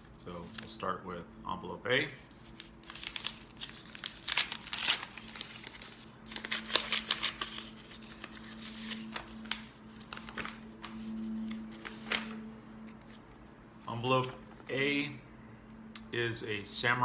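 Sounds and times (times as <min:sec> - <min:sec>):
paper rustling and crinkling: 0:00.3 - 0:00.8, 0:02.0 - 0:14.7
paper envelope tearing: 0:02.3 - 0:12.4.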